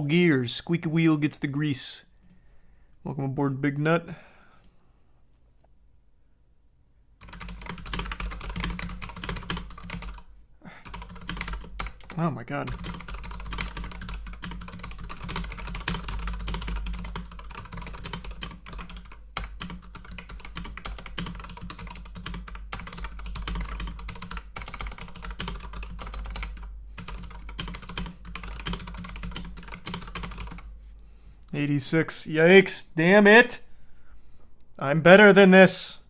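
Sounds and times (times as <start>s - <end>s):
rapid typing on a keyboard: 7.2s - 30.7s.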